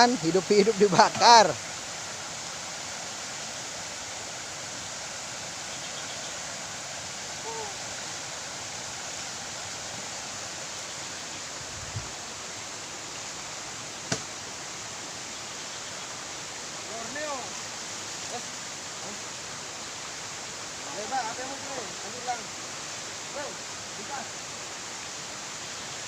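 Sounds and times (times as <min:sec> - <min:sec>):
steady hiss: 0:00.0 - 0:26.0
faint voice: 0:07.4 - 0:07.8.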